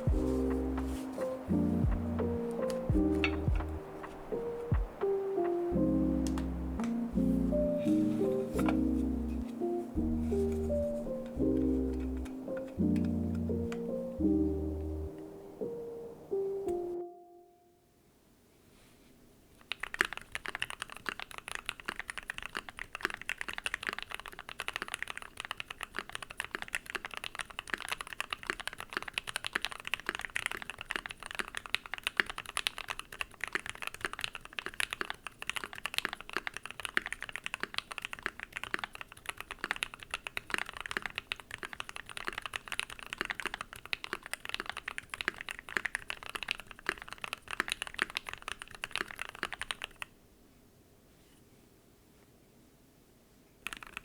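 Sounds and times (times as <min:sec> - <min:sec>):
mechanical keyboard clacks: 0:19.7 - 0:50.1, 0:53.6 - 0:54.0.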